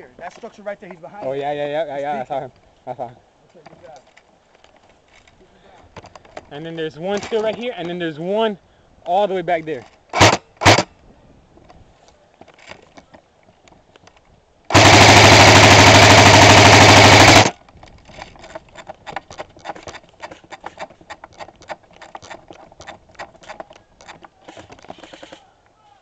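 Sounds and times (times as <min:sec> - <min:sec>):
airsoft rifle full-auto burst: 0:10.1 - 0:10.9, 0:14.7 - 0:17.6, 0:24.4 - 0:25.4
sharp airsoft shots: 0:10.1 - 0:10.9, 0:14.7 - 0:17.5.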